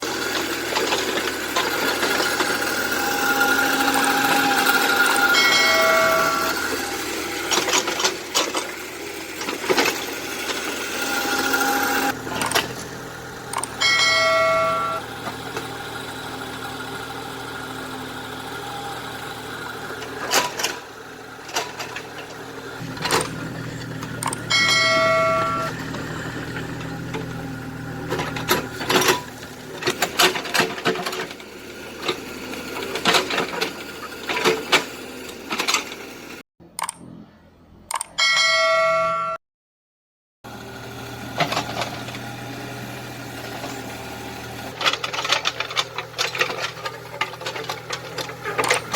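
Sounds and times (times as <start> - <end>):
excavator engine running: 0.0 - 38.2, 40.5 - 48.9
metallic clanks and knocks: 21.5 - 27.4, 28.0 - 31.4, 44.8 - 48.9
bell-like chime: 38.2 - 39.4.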